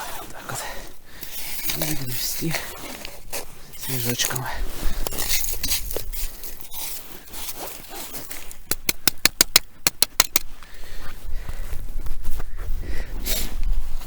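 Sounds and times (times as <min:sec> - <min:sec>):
snow being scraped: 0:01.3 - 0:08.5.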